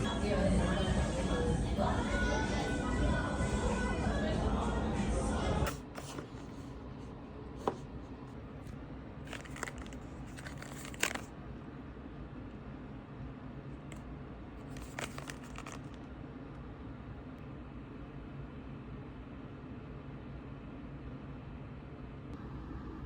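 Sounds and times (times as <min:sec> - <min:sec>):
steady low hum: 0:00.0 - 0:23.0
rustling and crinkling handling: 0:05.7 - 0:11.4, 0:14.6 - 0:16.0.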